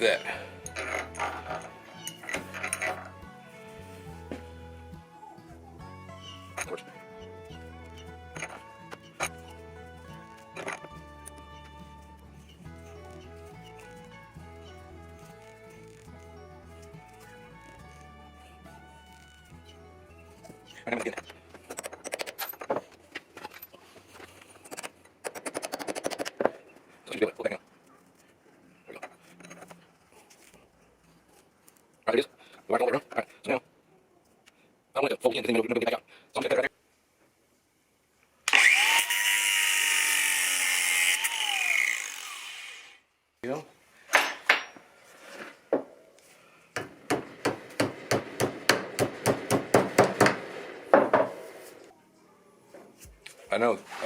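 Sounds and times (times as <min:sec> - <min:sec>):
metallic clicks and clinks: 0:00.6 - 0:03.1
hammer tapping on steel: 0:46.8 - 0:51.3.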